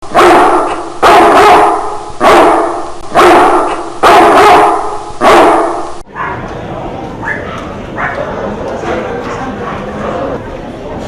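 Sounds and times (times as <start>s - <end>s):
dog barking with echo: 0.1s - 6.4s, 7.2s - 8.4s.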